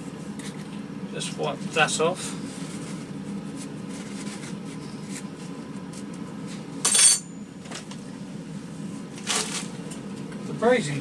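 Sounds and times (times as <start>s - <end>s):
metal objects set on workbench: 6.9s - 7.3s.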